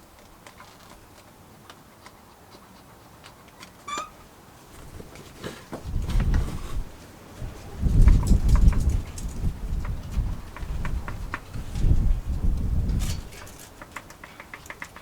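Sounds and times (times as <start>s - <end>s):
brief squeak: 3.9s - 4.2s
low rustling and thumps: 4.7s - 13.6s.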